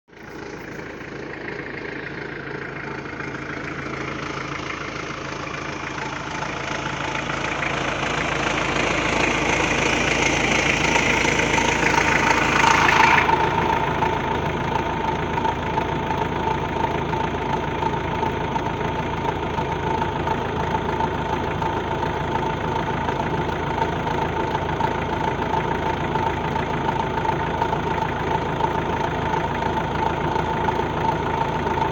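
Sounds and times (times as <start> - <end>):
diesel engine idling: 0.1 - 31.9
steady whine: 0.2 - 18.0
alternator growling: 0.2 - 31.9.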